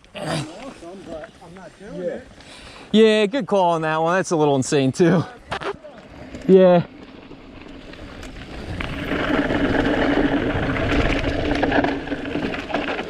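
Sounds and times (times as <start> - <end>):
bike tyre noise: 5.3 - 13.0.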